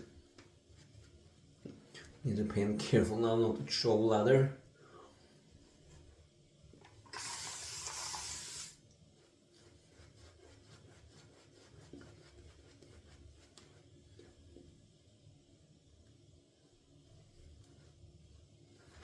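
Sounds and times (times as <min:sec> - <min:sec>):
shaving brush hiss: 0:07.1 - 0:08.8
brushing strokes: 0:07.1 - 0:14.6, 0:17.3 - 0:19.0.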